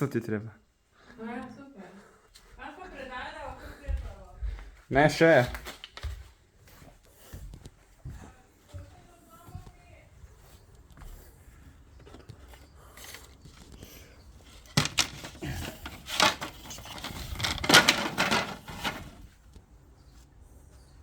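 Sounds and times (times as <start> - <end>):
objects clattering and scraping: 14.4 - 19.4.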